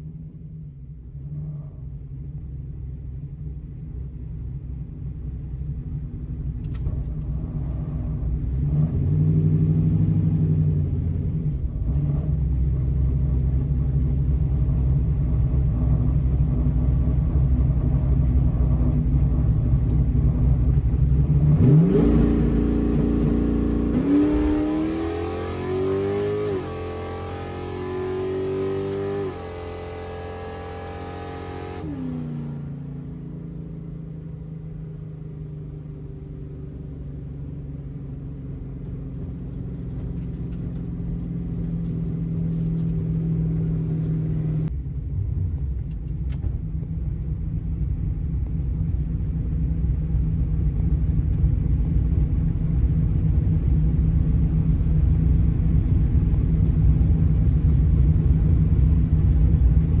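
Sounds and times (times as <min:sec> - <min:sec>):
car engine running: 0:00.0 - 1:00.0.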